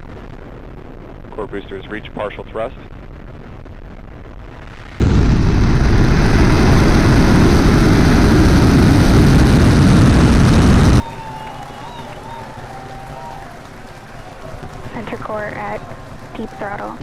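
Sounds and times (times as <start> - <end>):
rocket engines roaring: 5.0 - 17.0.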